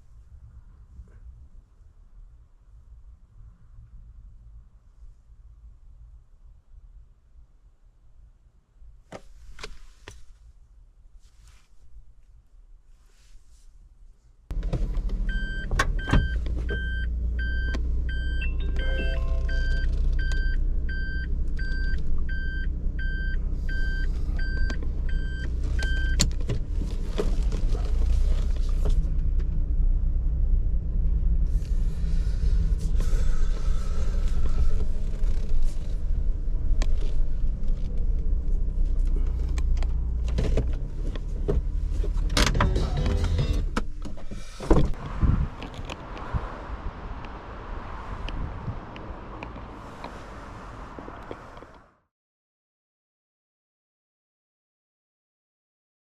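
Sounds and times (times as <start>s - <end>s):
warning chime beeping: 16.8s - 22.5s.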